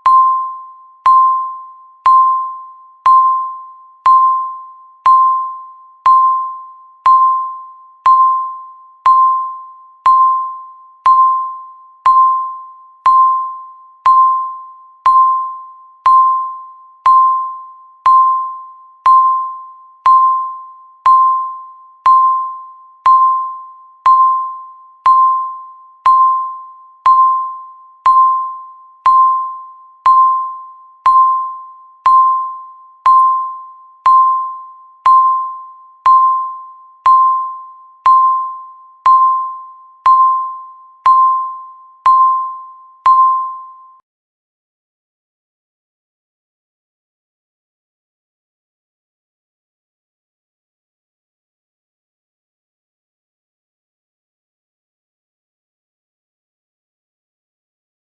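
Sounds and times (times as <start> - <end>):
timer beeps: 0.0 - 44.0.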